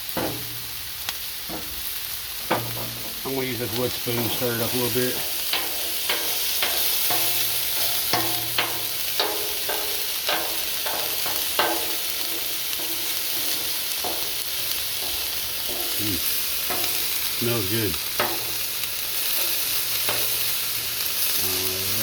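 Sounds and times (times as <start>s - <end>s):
chicken sizzling on a griddle: 0.0s - 22.0s
wooden spoon scraping a griddle: 1.5s - 17.4s.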